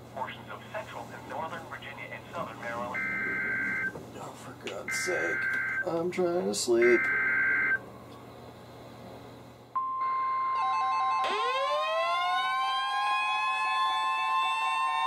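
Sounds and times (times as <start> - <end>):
steady warning alarm tone: 2.9 - 3.9, 4.9 - 6.0, 6.7 - 7.8, 9.8 - 15.0
pulsing beep: 3.0 - 3.9, 4.9 - 5.9, 6.8 - 7.8, 9.8 - 11.3
rising siren-like tone: 10.0 - 15.0.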